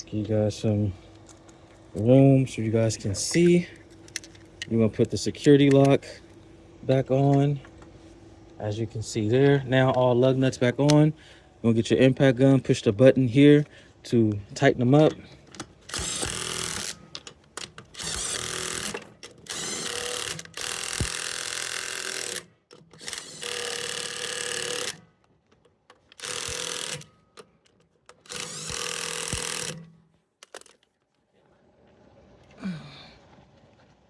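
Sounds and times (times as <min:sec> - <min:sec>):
impact wrench bursts: 0:15.9 - 0:17.2, 0:17.9 - 0:25.0, 0:26.2 - 0:27.2, 0:28.2 - 0:29.9.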